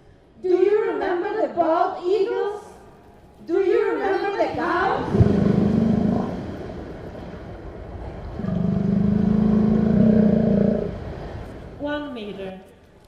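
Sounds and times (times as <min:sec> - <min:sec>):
cow mooing: 0:08.4 - 0:11.0.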